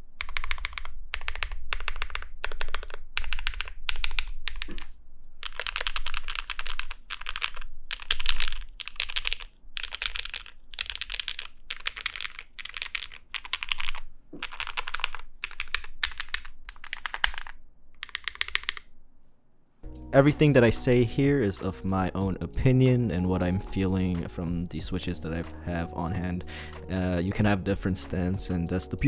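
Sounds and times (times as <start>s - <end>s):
mechanical keyboard typing: 0.2s - 18.9s.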